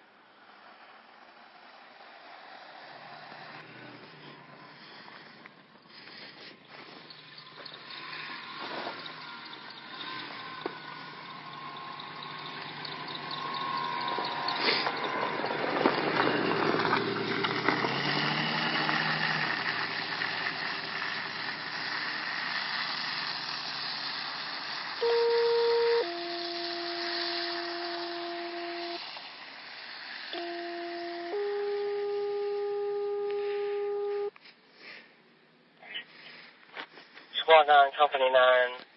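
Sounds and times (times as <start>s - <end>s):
vehicle engine hum: 0.0s - 38.9s
tyres hissing on slush: 0.5s - 32.0s
loud steady electronic tone: 6.1s - 15.6s, 24.0s - 34.4s.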